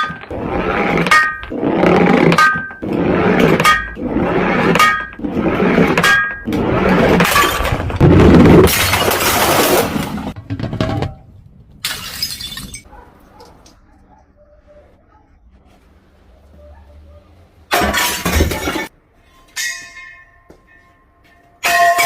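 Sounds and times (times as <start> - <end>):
glass bottles shattering: 8.6 - 10.4, 11.8 - 12.9, 17.7 - 18.9
glass shards clinking: 11.8 - 12.9.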